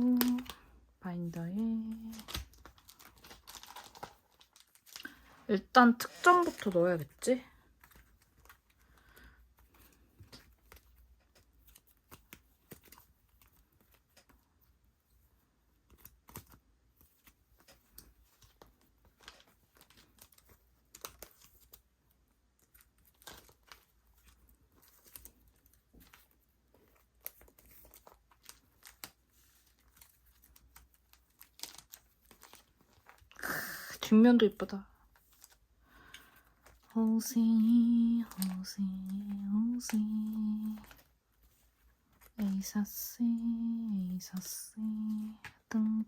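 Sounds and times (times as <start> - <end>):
plastic sleeves clicking: 0.0 - 0.7, 1.9 - 5.2, 9.6 - 14.5, 15.8 - 21.9, 22.5 - 33.4, 37.5 - 42.6
paper cards rustling: 0.0 - 46.0.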